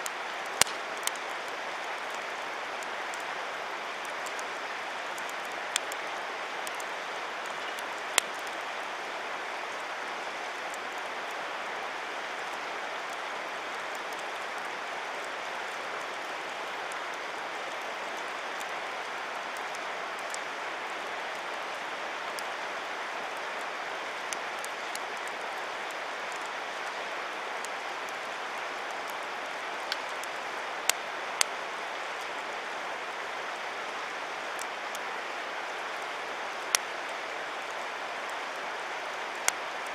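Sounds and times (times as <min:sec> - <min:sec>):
campfire burning: 0:00.0 - 0:39.9
river water flowing: 0:00.0 - 0:39.9
wood popping and cracking: 0:00.6 - 0:01.2.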